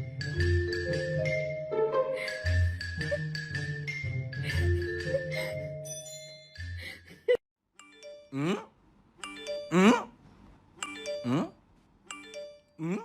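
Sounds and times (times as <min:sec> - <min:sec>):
mallet percussion music: 0:00.0 - 0:06.9, 0:10.8 - 0:11.4.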